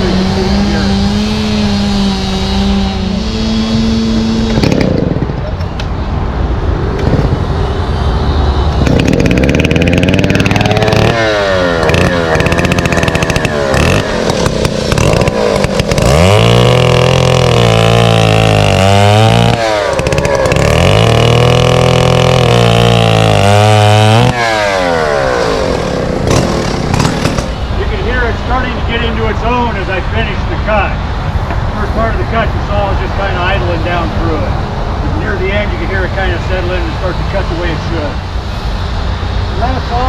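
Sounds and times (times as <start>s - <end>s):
chainsaw cutting log: 0.0s - 5.6s, 7.0s - 7.4s, 8.8s - 27.6s.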